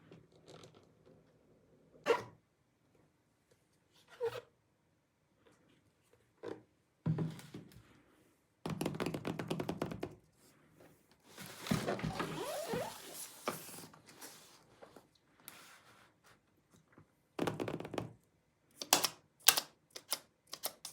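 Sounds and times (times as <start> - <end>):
packaging rustling and scraping: 11.3 - 16.1.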